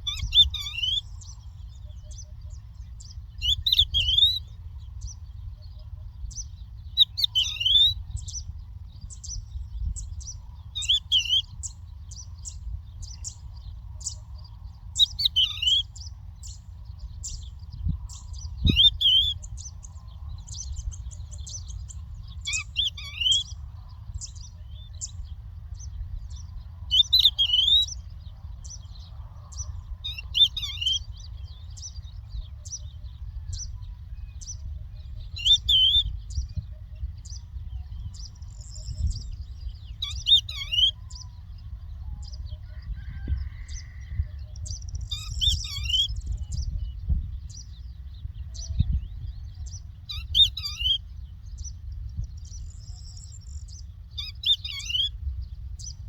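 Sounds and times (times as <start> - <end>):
larks singing: 0.0 - 56.0
low rumble: 51.0 - 54.2.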